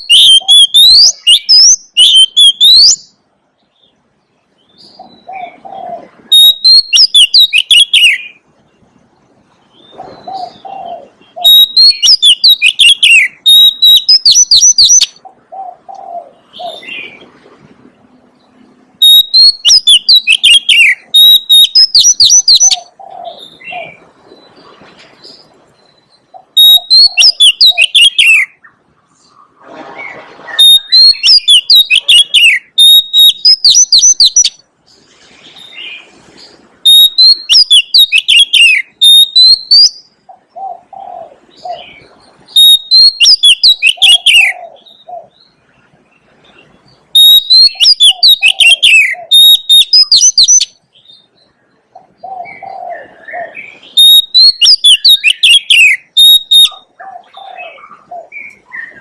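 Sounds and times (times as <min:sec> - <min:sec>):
bird singing whistled phrases: 0:00.0 - 0:03.2, 0:06.3 - 0:08.4, 0:09.8 - 0:15.2, 0:19.0 - 0:24.5, 0:26.4 - 0:28.6, 0:30.6 - 0:34.6, 0:36.8 - 0:40.1, 0:42.5 - 0:45.2, 0:47.1 - 0:50.8, 0:52.2 - 0:56.9.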